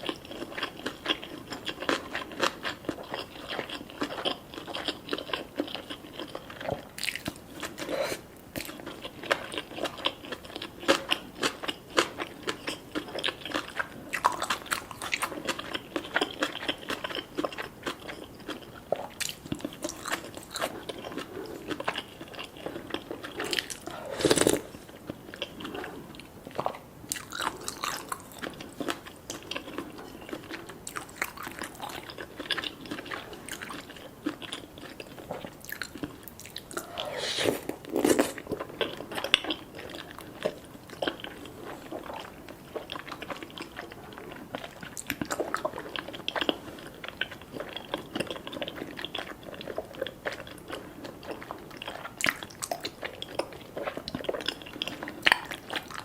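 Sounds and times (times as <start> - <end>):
wet chewing with crunchy clicks: 0.0 - 56.0.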